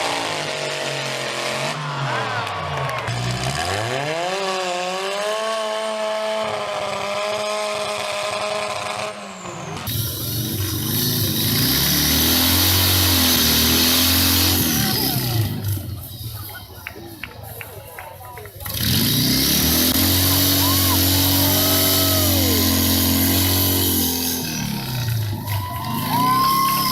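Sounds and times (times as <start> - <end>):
chainsaw engine revving: 0.0 - 2.0, 3.0 - 16.2, 18.6 - 26.9
heavy engine running: 7.0 - 26.9.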